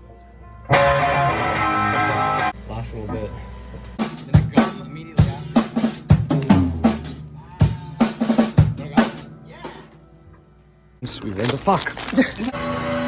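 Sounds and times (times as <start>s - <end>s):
drum kit playing: 4.0s - 9.9s.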